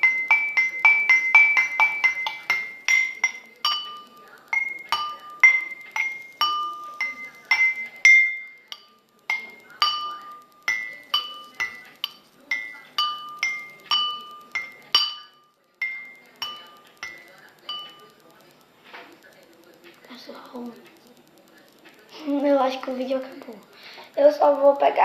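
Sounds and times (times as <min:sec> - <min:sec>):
water-filled glasses tapped: 0:00.0 - 0:18.0.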